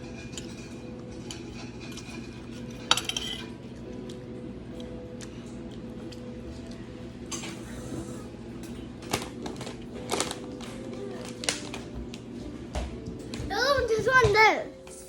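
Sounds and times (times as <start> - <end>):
utensils clicking against dishes: 0.0 - 3.6.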